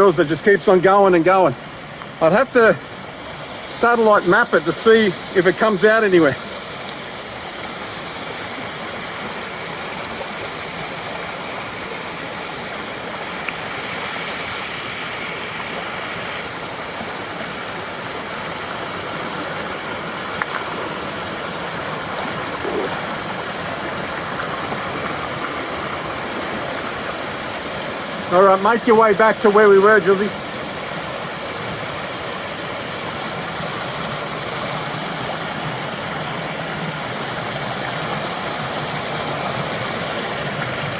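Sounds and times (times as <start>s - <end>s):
creek water rushing: 0.0s - 40.9s.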